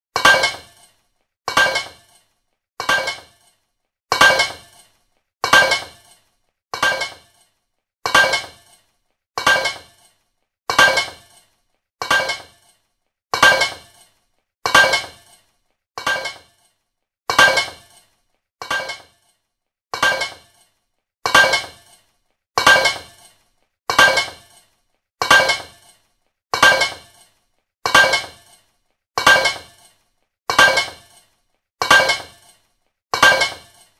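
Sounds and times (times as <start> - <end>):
metal pipe clanging: 0.2 - 6.2, 6.8 - 7.5, 8.1 - 8.8, 9.4 - 12.8, 13.4 - 14.1, 14.7 - 15.4, 16.0 - 16.7, 17.3 - 19.3, 20.0 - 20.7, 21.3 - 22.0, 22.6 - 26.0, 26.6 - 27.3, 27.9 - 28.6, 29.2 - 32.6, 33.2 - 33.9.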